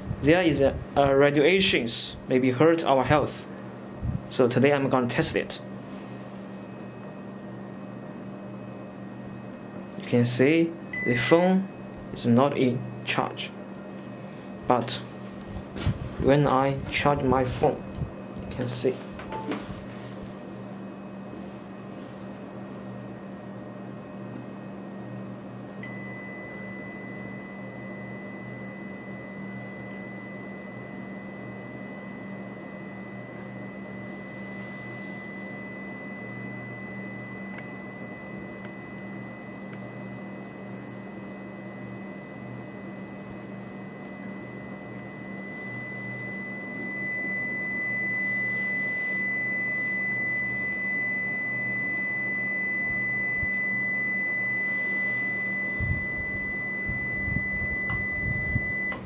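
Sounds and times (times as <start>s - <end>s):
constant low hum: 0.0s - 59.0s
high-pitched alarm tone: 10.9s - 11.7s, 25.8s - 59.0s.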